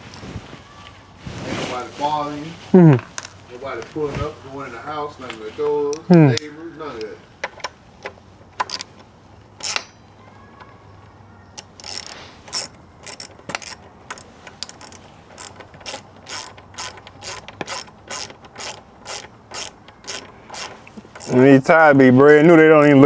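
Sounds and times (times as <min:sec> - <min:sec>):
ratchet wrench clicking: 0:08.6 - 0:08.9, 0:09.6 - 0:10.0, 0:11.6 - 0:21.5.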